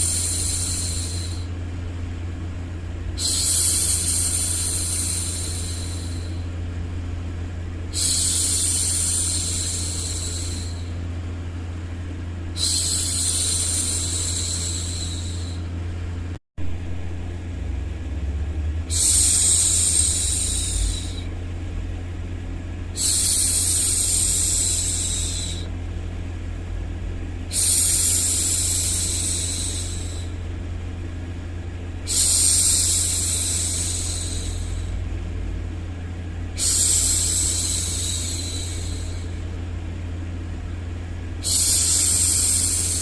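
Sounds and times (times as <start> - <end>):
low white-noise hum: 0.0 - 43.0
woman shushing: 12.6 - 15.6, 18.9 - 21.3, 32.1 - 35.0, 36.6 - 39.4, 41.4 - 43.0.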